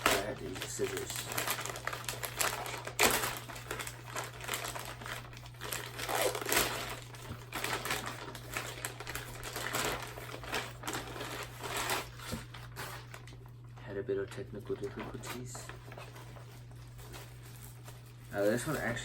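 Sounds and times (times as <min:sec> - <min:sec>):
scissors cutting package: 0:00.0 - 0:13.4
plastic packaging crinkling: 0:00.0 - 0:19.0.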